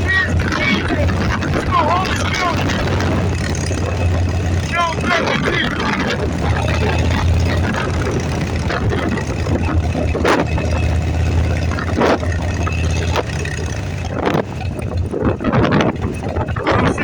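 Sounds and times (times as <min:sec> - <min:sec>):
motorcycle engine rumbling: 0:00.0 - 0:17.0.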